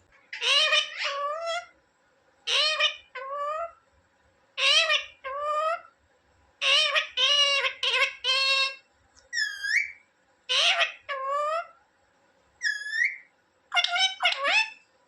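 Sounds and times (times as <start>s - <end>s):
parrot high-pitched calls: 0.2s - 1.8s, 2.5s - 3.8s, 4.6s - 5.9s, 6.6s - 11.8s, 12.6s - 14.8s
parrot rising whistled notes: 9.4s - 10.0s, 12.6s - 13.3s.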